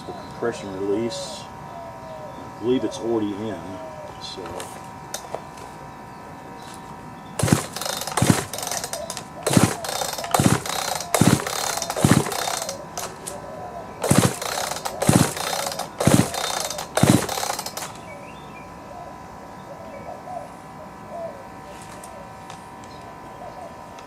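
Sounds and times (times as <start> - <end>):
chainsaw recoil starter pulls: 7.4 - 13.4, 14.0 - 18.0
engine turning over: 7.4 - 13.4, 14.0 - 18.0.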